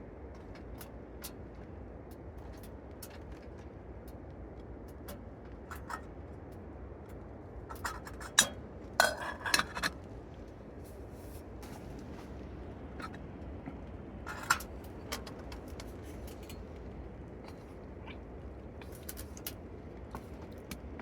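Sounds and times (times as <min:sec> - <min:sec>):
metal cookware clinking and scraping: 0:07.7 - 0:10.0.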